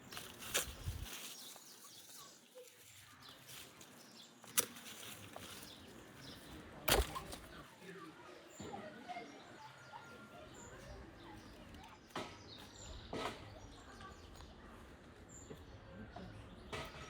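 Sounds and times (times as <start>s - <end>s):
rustling crackles: 0.0s - 6.4s
small bird chirping: 0.0s - 7.6s.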